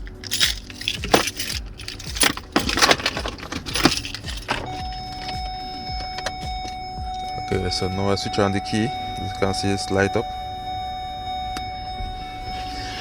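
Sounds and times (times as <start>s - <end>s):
car keys jangling: 0.0s - 13.0s
high electronic tone: 4.6s - 13.0s.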